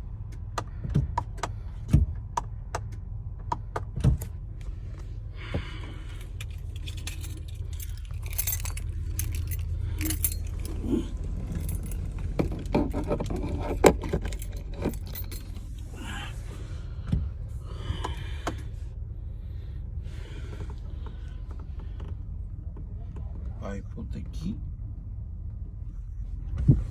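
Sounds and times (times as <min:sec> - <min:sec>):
steady low hum: 0:00.0 - 0:26.9
keys jangling: 0:05.8 - 0:16.1.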